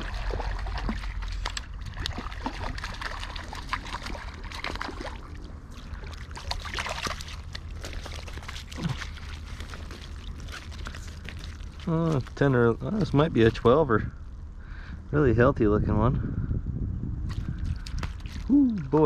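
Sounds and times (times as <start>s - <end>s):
fish thrashing and splashing: 0.0s - 13.6s, 17.3s - 19.0s
low rumble: 0.0s - 19.0s.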